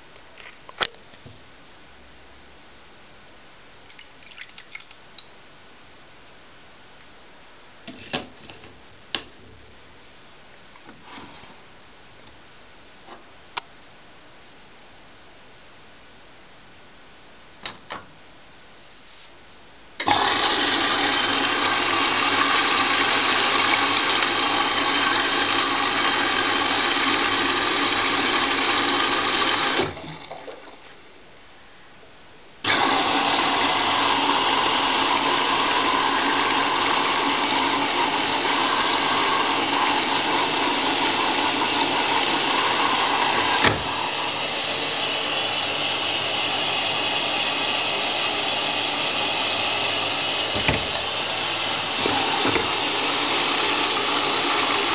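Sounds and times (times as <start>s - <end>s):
water rushing into washing machine: 20.0s - 30.9s, 32.6s - 54.9s
washing machine click: 50.6s - 51.0s.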